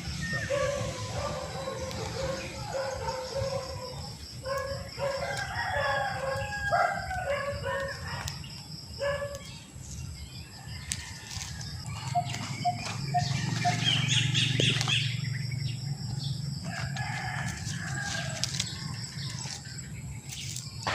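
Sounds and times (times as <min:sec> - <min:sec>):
rooster crowing: 0:00.4 - 0:07.9, 0:10.5 - 0:14.1, 0:16.6 - 0:19.6.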